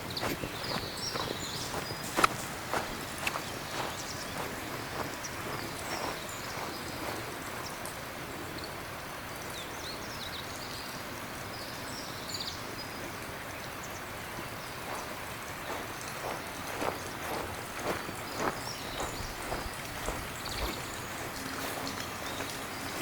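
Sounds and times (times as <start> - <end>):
slow footsteps on a path: 0.0 - 8.3, 14.3 - 23.0
small birds chirping: 0.0 - 23.0
steady outdoor hiss: 0.0 - 23.0.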